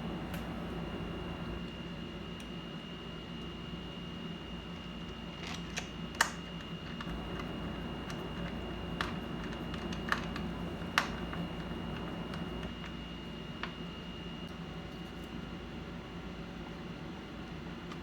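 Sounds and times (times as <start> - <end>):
faint high whine: 0.0 - 1.7, 7.0 - 12.8
steady low hum: 0.0 - 1.7, 7.0 - 12.9
small tools clicking and tapping: 5.4 - 12.7.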